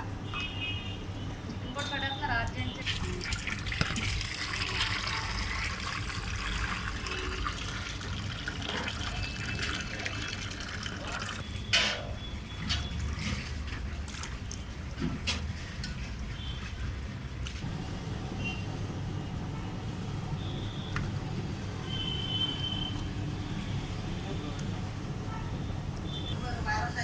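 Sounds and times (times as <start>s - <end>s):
water pouring and splashing: 2.8s - 17.7s.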